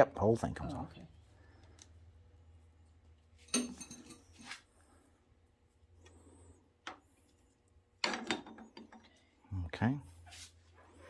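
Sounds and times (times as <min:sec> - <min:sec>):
engine parts clinking and knocking: 0:08.0 - 0:09.2.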